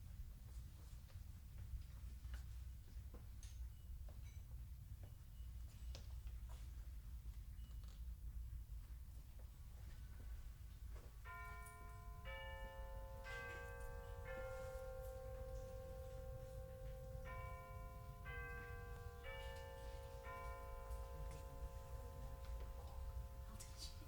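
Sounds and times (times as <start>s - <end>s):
low hum of store ambience: 0.1s - 24.0s
four-note bell chime: 11.3s - 24.0s.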